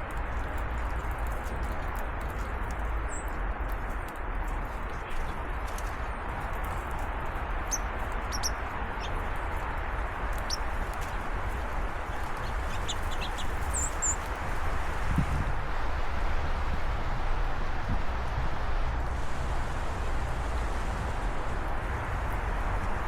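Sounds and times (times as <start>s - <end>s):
outdoor rush: 0.0s - 23.0s
small birds chirping: 2.4s - 3.4s, 4.9s - 14.3s.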